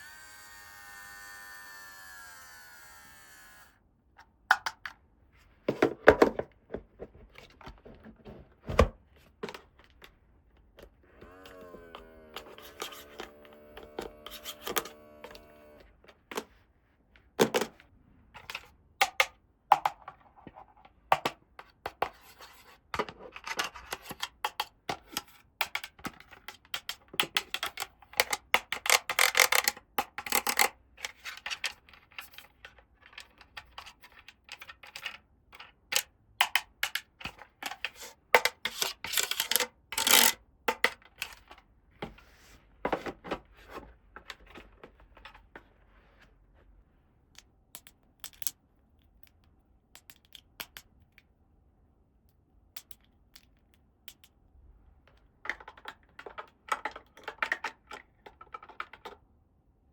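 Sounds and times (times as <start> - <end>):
plastic toy pieces clicking: 25.6 - 32.4, 35.9 - 41.4, 47.8 - 48.6, 55.2 - 59.2.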